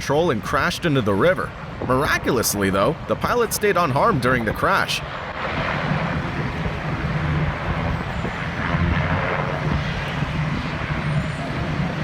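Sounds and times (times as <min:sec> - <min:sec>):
wind on microphone: 0:00.0 - 0:12.0
helicopter engine and rotor: 0:05.0 - 0:12.0.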